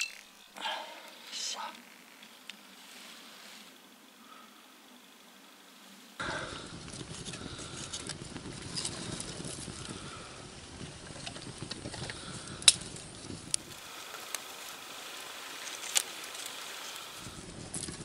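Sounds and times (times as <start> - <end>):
campfire crackling and popping: 6.2 - 18.0.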